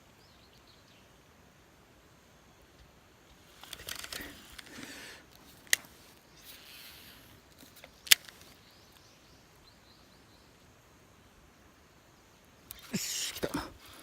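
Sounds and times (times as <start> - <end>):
fishing reel clicks: 6.4 - 7.4.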